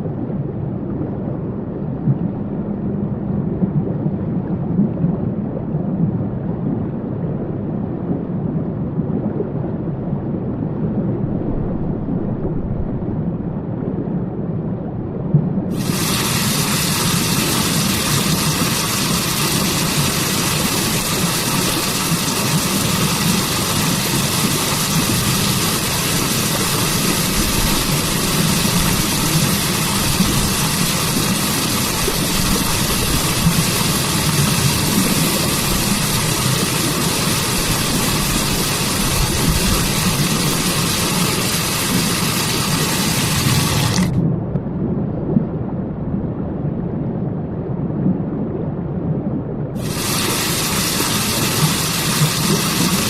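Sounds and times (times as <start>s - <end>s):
waterfall rushing: 15.7s - 44.2s, 49.8s - 53.0s.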